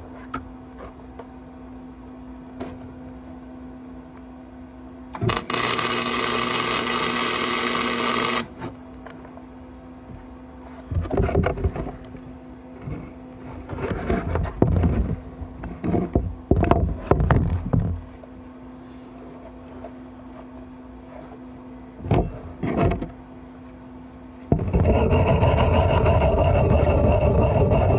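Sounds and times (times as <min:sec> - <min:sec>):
steady low hum: 0:01.3 - 0:27.9
welding arc hissing and crackling: 0:05.3 - 0:08.5
knocks and scrapes: 0:12.8 - 0:18.2, 0:24.5 - 0:27.9.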